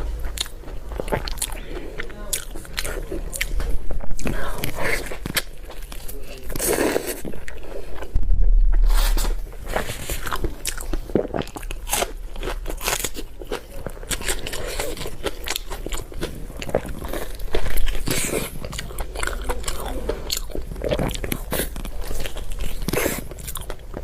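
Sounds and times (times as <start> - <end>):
crunchy chewing: 0.0 - 24.0
loud low thud: 8.1 - 9.8.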